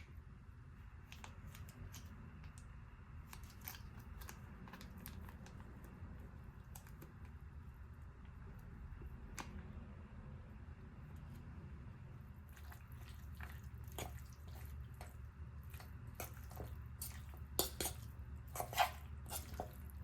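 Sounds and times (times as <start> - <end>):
low steady hum: 0.0 - 20.0
food preparation clicks and taps: 13.9 - 20.0.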